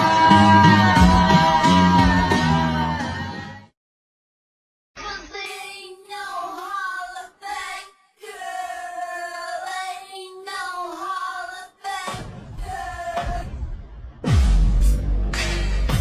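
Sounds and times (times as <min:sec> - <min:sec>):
high voice singing: 0:05.0 - 0:13.5.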